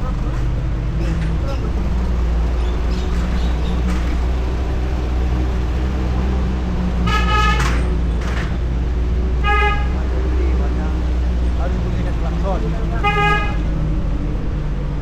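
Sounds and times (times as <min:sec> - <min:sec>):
vehicle engine and road drone: 0:00.0 - 0:15.0
car horn honking: 0:07.0 - 0:07.9, 0:09.4 - 0:10.2, 0:13.0 - 0:13.7.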